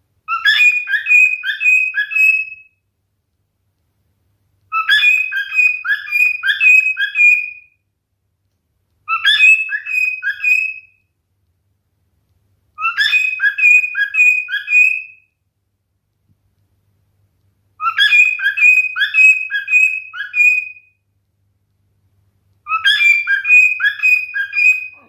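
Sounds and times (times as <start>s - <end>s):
cockatiel whistling chirps: 0.3s - 2.8s, 4.7s - 7.8s, 9.0s - 11.0s, 12.8s - 15.3s, 17.8s - 21.0s, 22.6s - 25.0s.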